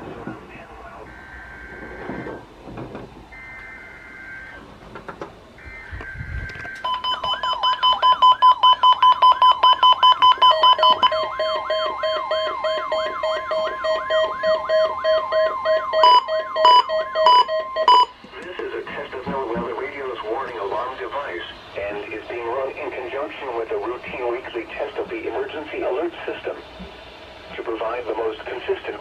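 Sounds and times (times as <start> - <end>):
steady warning alarm tone: 0.9 - 4.9, 5.5 - 29.0
pulsing warbling alarm: 1.0 - 2.6, 3.3 - 4.8, 5.5 - 23.7.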